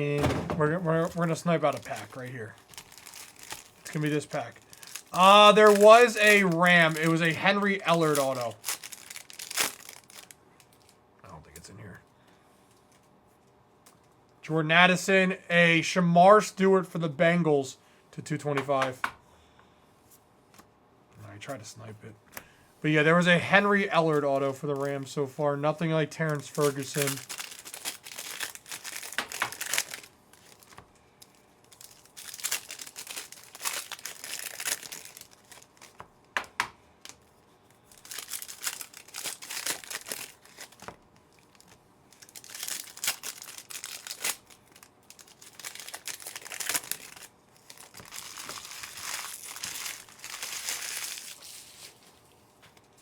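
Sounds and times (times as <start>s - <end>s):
foil wrappers crinkling and tearing: 0.0s - 11.0s, 23.6s - 52.2s.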